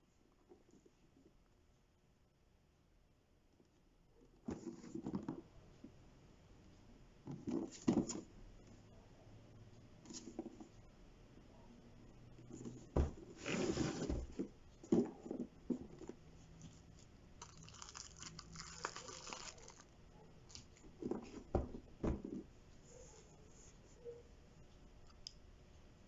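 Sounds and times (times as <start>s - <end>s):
packaging rustling and tearing: 17.4s - 19.9s.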